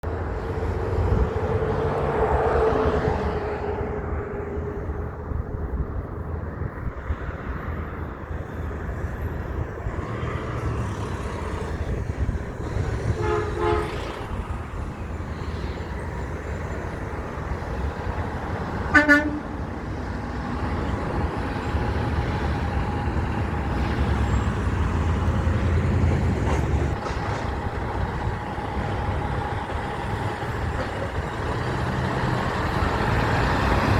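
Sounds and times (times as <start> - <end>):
heavy trucks driving past: 0.0 - 33.9
short horn toots: 13.2 - 14.0.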